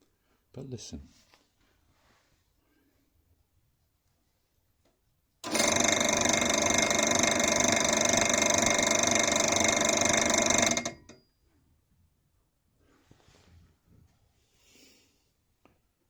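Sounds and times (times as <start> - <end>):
pillar drill whining: 5.4 - 11.2.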